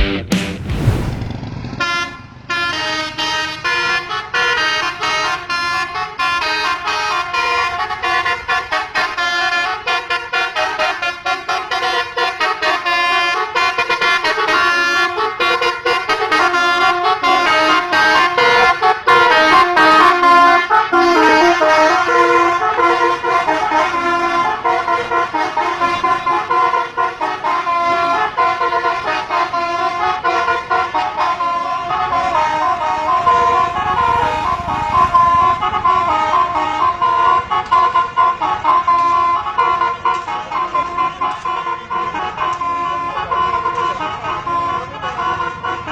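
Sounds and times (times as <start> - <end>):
low rumble: 0.0 - 1.6
multi-tone bus horn tune: 1.8 - 45.9.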